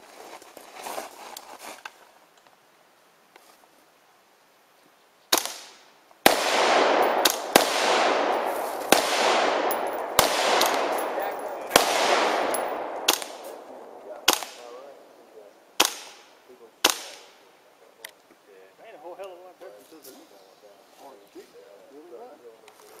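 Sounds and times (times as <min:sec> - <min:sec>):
rifle shots echoing: 0:05.3 - 0:15.2, 0:15.8 - 0:17.4.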